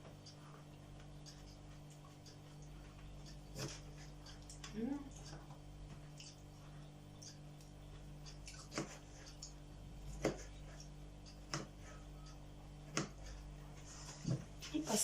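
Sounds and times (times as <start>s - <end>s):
faint steady hum: 0.0s - 15.0s
knife chopping on cutting board: 8.7s - 9.0s, 10.0s - 10.5s.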